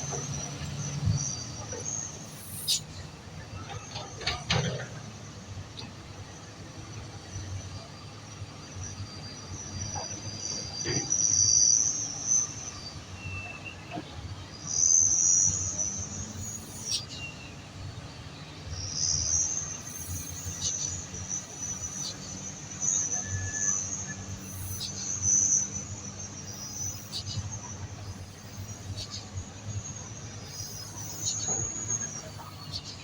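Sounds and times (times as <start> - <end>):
insects buzzing: 0.0 - 3.2, 14.6 - 33.0
heavy machinery engine rumble: 15.5 - 33.0.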